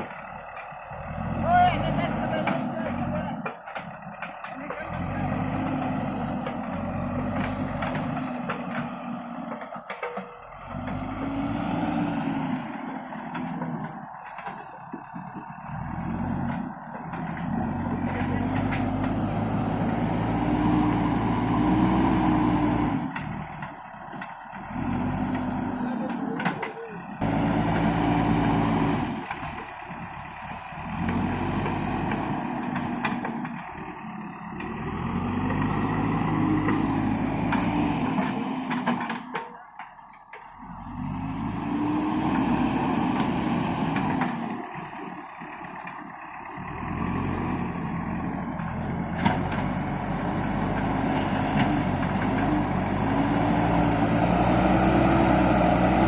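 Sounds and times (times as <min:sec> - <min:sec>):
diesel engine revving: 0:00.0 - 0:56.0.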